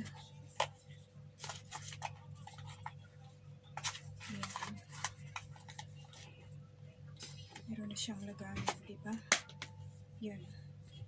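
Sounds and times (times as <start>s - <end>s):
steady low hum: 0.0s - 11.0s
gadget and packaging handled: 1.4s - 3.0s, 3.7s - 6.4s.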